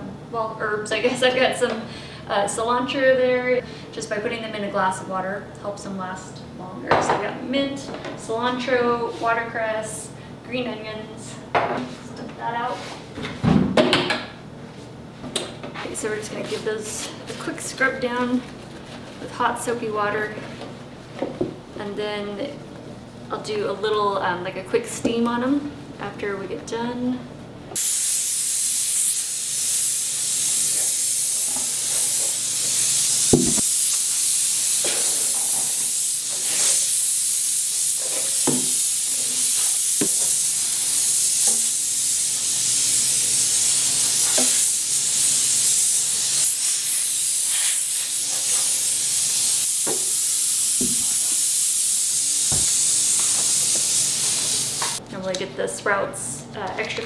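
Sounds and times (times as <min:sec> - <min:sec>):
tap water running into sink: 0:52.4 - 0:55.0.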